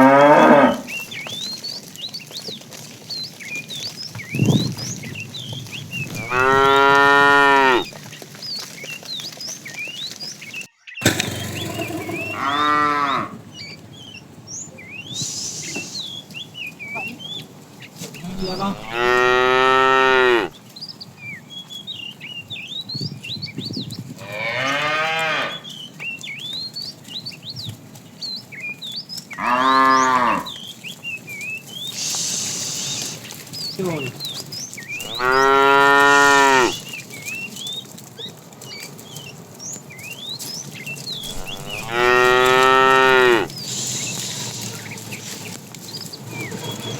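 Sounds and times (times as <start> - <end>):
cows mooing: 0.0 - 1.0, 6.0 - 7.9, 11.0 - 13.6, 18.2 - 20.6, 24.2 - 25.6, 29.4 - 30.6, 35.0 - 36.8, 41.2 - 44.9.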